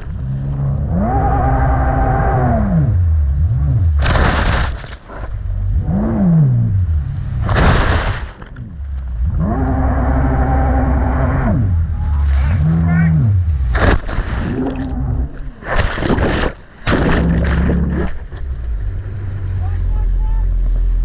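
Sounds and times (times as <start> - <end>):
jet ski engine revving: 0.0 - 21.0
water rushing: 4.0 - 5.4, 7.4 - 8.8, 9.4 - 19.4.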